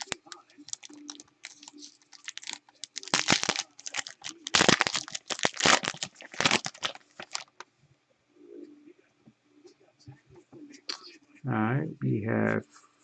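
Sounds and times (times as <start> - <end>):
foil wrapper tearing and crinkling: 0.0 - 7.6.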